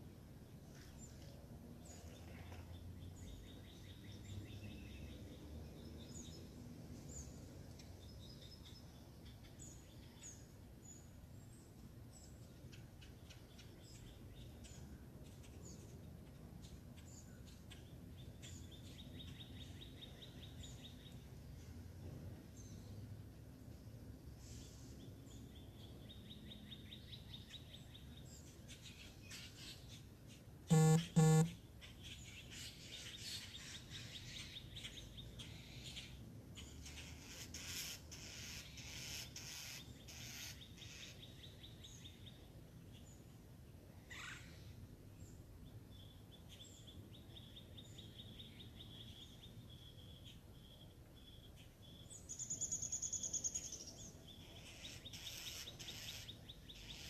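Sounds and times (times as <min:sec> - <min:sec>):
birds chirping: 0:30.7 - 0:31.6
buzzy pulsed call: 0:30.7 - 0:31.6.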